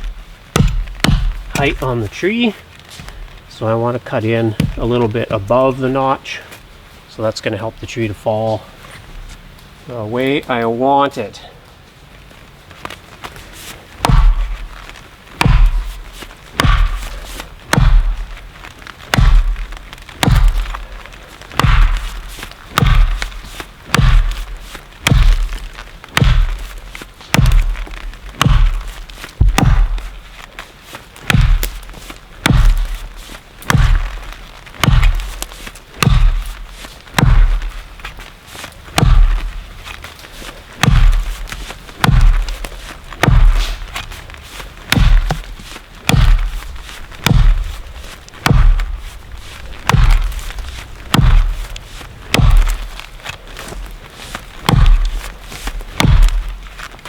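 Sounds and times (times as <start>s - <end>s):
axe chopping tree trunk: 0.0s - 2.2s, 4.6s - 5.3s, 14.0s - 30.4s, 31.2s - 56.9s.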